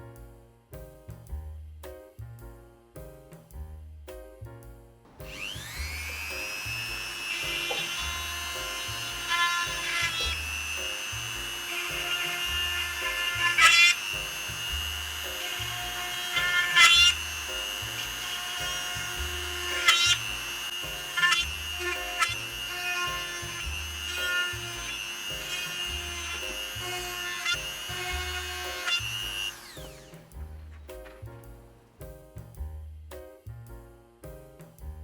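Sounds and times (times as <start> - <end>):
drill bit rasping through material: 5.1 - 30.9
rotary tool high whine: 5.2 - 30.3.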